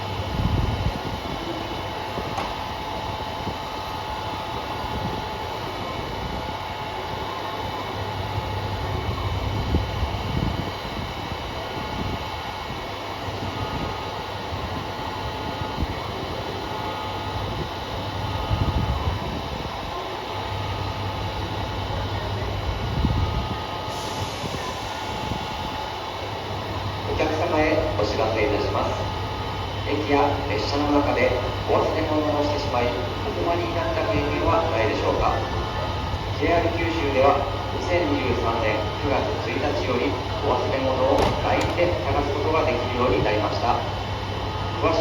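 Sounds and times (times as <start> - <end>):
diesel railcar idling rumble: 0.0 - 45.0.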